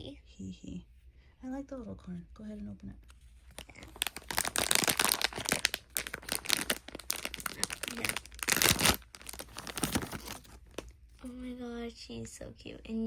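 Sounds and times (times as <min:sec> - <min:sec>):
packaging crinkling and tearing: 0:03.5 - 0:11.0.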